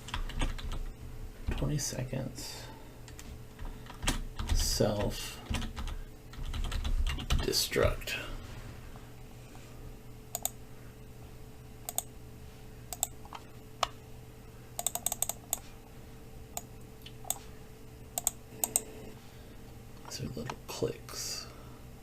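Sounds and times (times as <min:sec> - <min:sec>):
faint steady hum: 0:00.0 - 0:22.0
keyboard and mouse clicks: 0:10.3 - 0:10.6, 0:11.9 - 0:12.1, 0:12.9 - 0:14.0, 0:14.8 - 0:15.6, 0:18.2 - 0:18.9.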